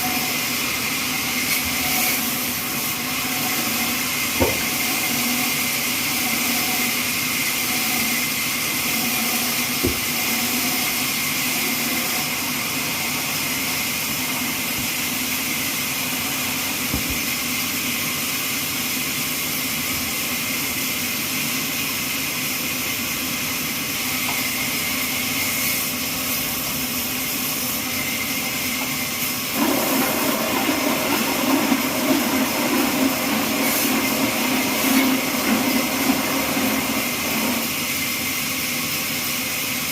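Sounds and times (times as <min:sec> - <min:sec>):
bandsaw sawing a log: 0:07.7 - 0:10.9.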